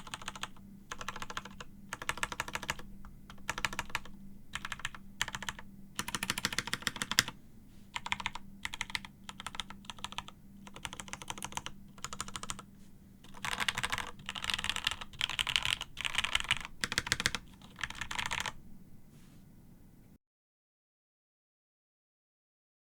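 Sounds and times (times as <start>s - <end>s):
mechanical keyboard typing: 0.0s - 7.4s, 8.0s - 12.7s, 13.3s - 18.6s.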